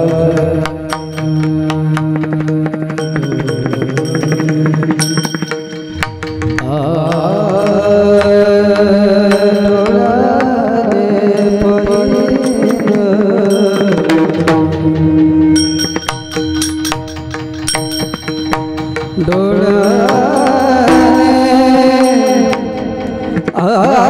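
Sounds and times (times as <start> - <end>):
sharp percussion strokes: 0.0 - 24.0
person singing long notes: 6.5 - 15.6, 19.2 - 24.0
steady drone: 16.4 - 23.6.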